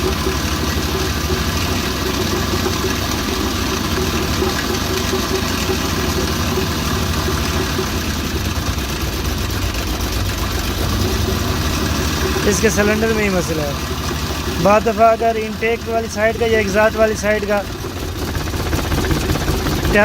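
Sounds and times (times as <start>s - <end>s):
petrol engine idling with misfire: 0.0s - 20.0s.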